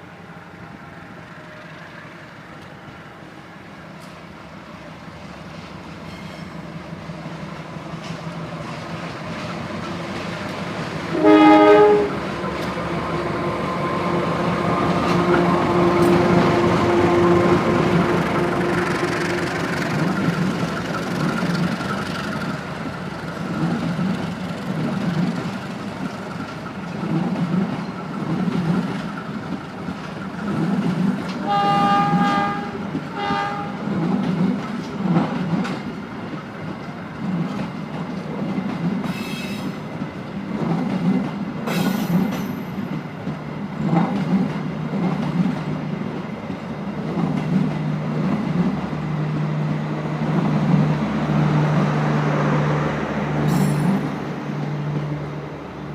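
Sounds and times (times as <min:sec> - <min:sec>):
diesel train passing: 0:00.0 - 0:55.9
train horn blasts: 0:11.1 - 0:12.2, 0:14.0 - 0:19.5, 0:31.4 - 0:33.8.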